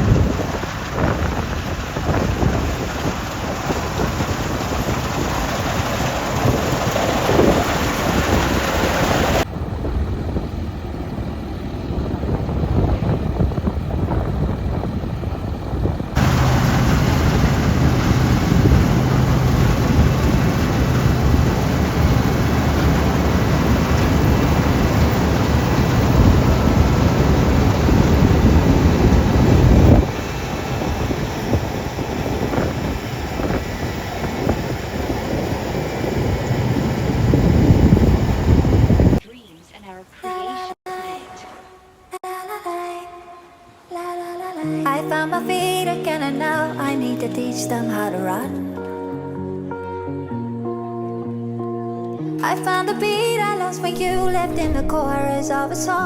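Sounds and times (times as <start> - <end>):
harvester and tractor engines droning: 0.0 - 39.2
wind rumble on microphone: 0.0 - 39.2, 54.0 - 56.0.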